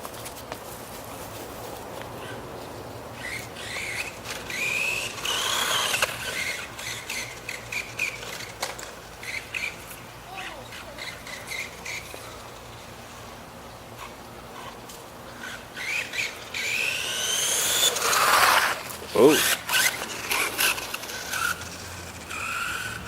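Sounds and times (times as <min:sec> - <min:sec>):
electric toy car motor whining: 0:03.2 - 0:12.2, 0:15.4 - 0:23.0
tyres rushing on ground: 0:15.8 - 0:23.0.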